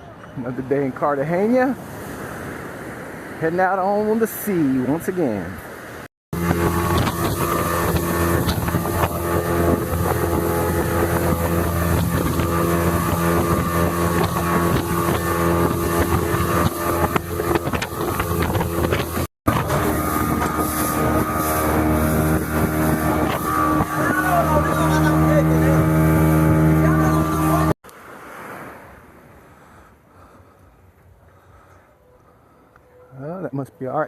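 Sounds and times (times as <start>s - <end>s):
rushing water: 0.0s - 30.1s
wind: 0.0s - 34.0s
motorboat engine running: 6.3s - 27.8s.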